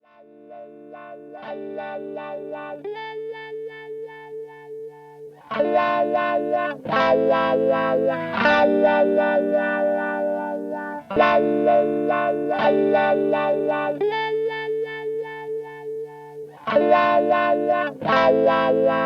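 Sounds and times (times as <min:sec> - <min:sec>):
instrumental music with chords: 0:00.1 - 0:19.0.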